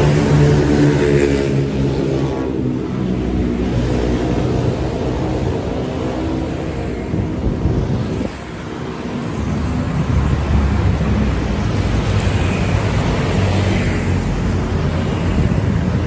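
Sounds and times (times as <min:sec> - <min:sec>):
wind noise: 0:00.0 - 0:16.0.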